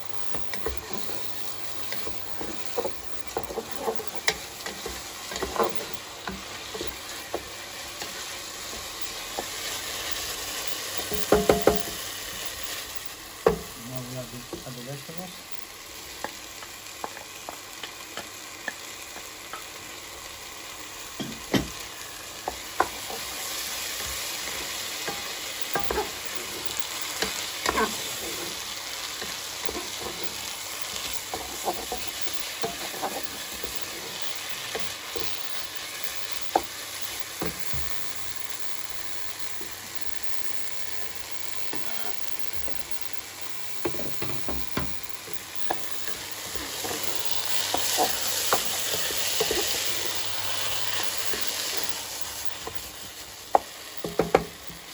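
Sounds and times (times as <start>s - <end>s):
food sizzling in a pan: 0.0s - 54.9s
utensil knocking against pan: 11.2s - 11.9s, 54.0s - 54.5s.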